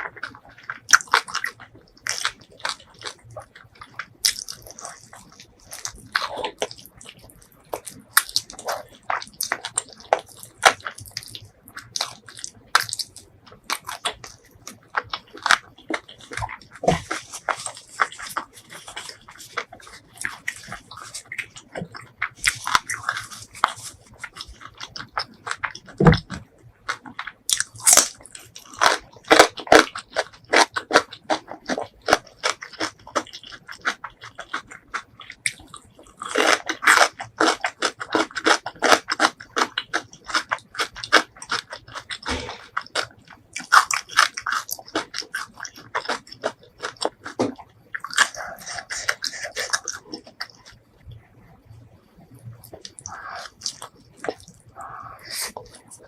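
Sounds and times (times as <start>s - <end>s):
crunchy chewing: 0.0s - 56.0s.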